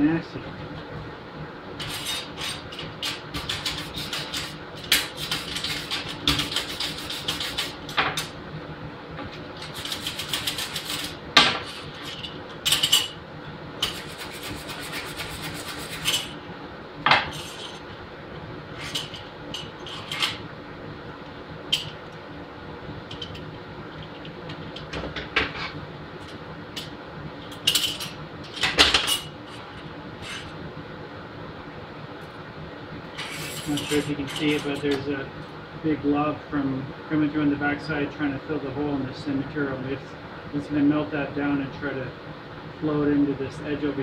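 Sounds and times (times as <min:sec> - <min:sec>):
tools scraping on metal table: 0:01.8 - 0:08.3, 0:09.6 - 0:13.2, 0:13.8 - 0:16.4, 0:17.2 - 0:17.8, 0:18.7 - 0:20.4, 0:25.4 - 0:25.8, 0:30.2 - 0:30.5, 0:33.1 - 0:35.0.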